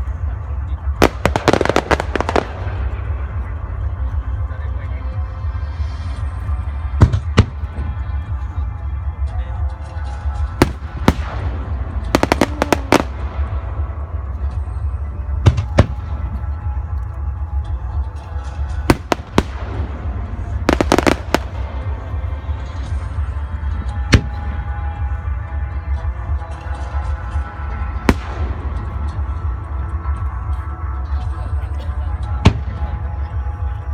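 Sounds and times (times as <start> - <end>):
low rumble: 0.0 - 26.5
fireworks bangs: 1.0 - 3.0, 10.6 - 13.9, 18.9 - 22.2.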